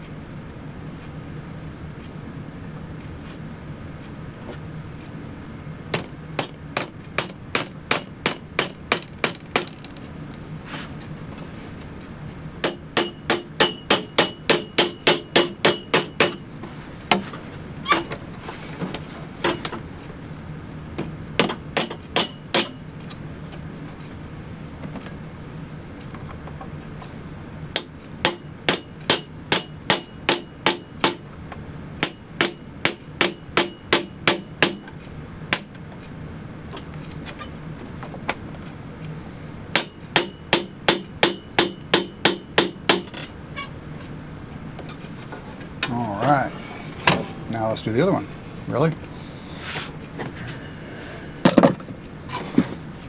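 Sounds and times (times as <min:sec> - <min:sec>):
hammer tapping: 0:05.9 - 0:09.8, 0:12.6 - 0:16.4, 0:21.0 - 0:22.8, 0:27.8 - 0:31.3, 0:32.0 - 0:35.8, 0:39.8 - 0:43.2.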